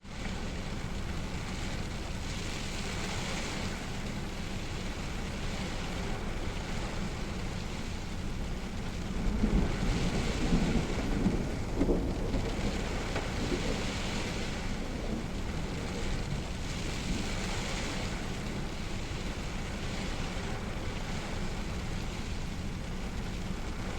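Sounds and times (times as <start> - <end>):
steady rainfall: 0.0 - 23.9
thunder rumbling: 8.1 - 23.9.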